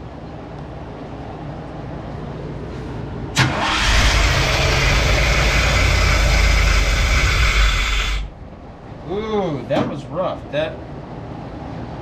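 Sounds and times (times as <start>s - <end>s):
engine running loud and rough: 3.3s - 8.8s
starter cranking engine: 3.4s - 8.3s.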